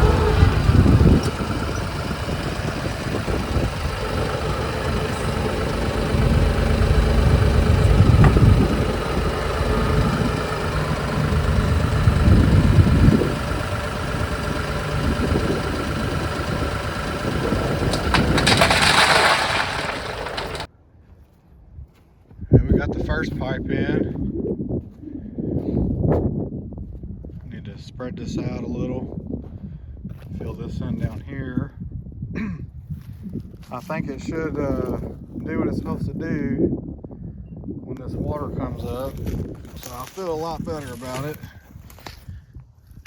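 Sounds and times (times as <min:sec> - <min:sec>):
engine running: 0:00.0 - 0:20.7.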